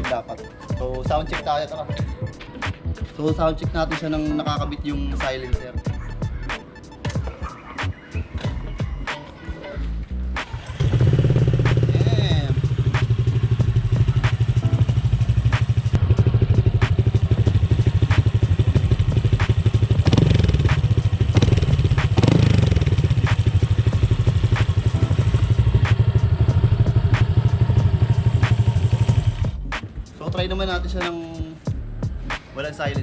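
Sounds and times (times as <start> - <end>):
scooter engine idling and revving: 10.0 - 29.8.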